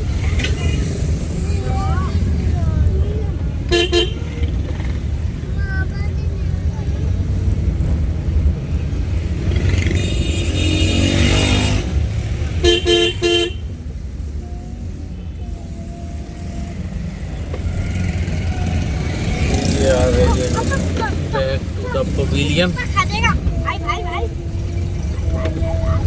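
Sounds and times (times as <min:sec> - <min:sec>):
street traffic: 0:00.0 - 0:26.0
wind and motorcycle engine rumble: 0:00.0 - 0:26.0
vehicle horn: 0:03.7 - 0:04.6, 0:09.8 - 0:13.8.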